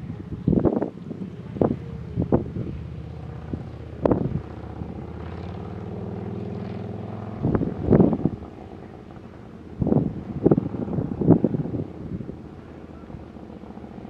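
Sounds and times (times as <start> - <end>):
engine droning: 0.0 - 14.0
wind buffeting microphone: 0.0 - 14.0.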